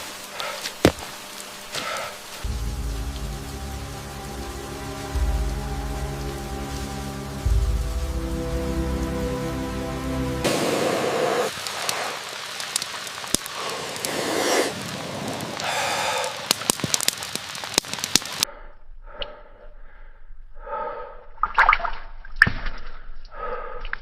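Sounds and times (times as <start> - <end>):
rain hissing and ticking: 0.0 - 18.5
man breathing heavily: 0.3 - 0.8, 1.7 - 2.5, 15.6 - 16.5, 18.4 - 21.4, 23.3 - 24.0.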